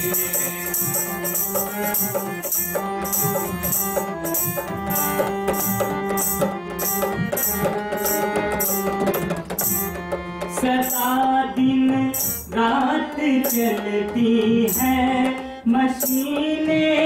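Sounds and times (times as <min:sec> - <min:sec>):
jingling percussion beat: 0:00.0 - 0:16.8.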